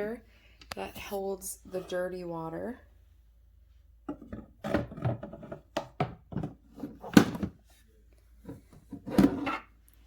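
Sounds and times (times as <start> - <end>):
container knocking and clunking: 4.1 - 7.6.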